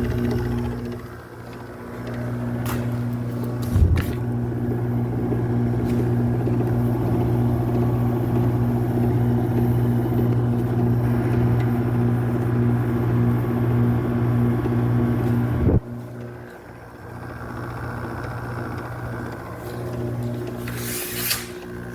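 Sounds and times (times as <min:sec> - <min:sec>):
air conditioner humming: 0:00.0 - 0:21.9
air conditioner clunk: 0:02.1 - 0:04.4.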